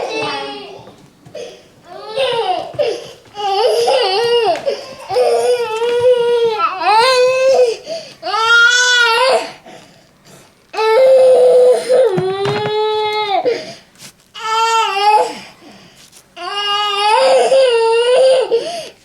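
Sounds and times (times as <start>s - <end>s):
young child crying: 1.4s - 9.6s.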